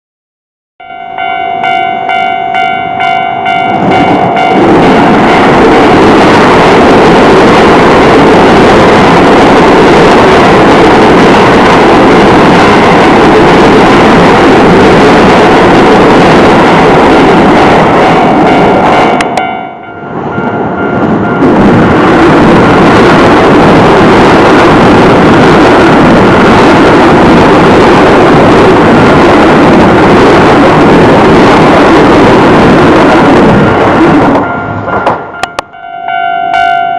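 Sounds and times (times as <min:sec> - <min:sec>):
level crossing warning bell: 0:00.8 - 0:07.2, 0:16.4 - 0:21.8, 0:34.3 - 0:36.9
electric trains passing: 0:00.8 - 0:36.9
wheel and rail noise: 0:00.8 - 0:36.9.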